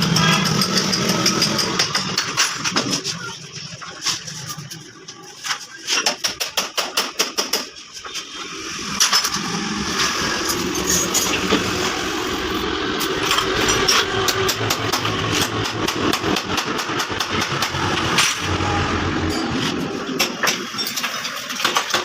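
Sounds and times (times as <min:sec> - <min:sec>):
small motorcycle engine: 0:00.0 - 0:03.1.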